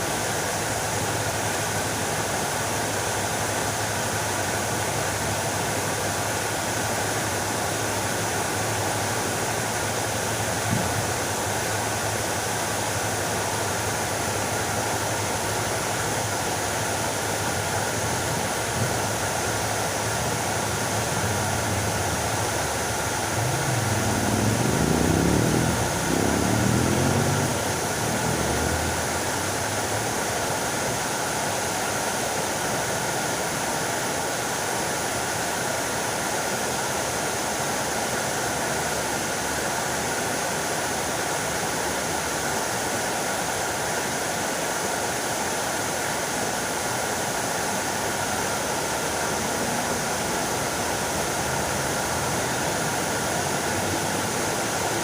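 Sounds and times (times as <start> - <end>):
fountain water splashing: 0.0 - 55.0.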